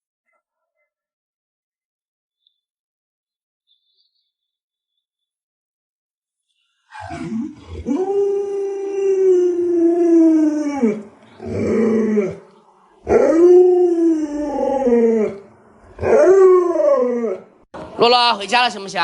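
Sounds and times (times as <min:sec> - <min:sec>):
dog howling: 0:06.9 - 0:17.7.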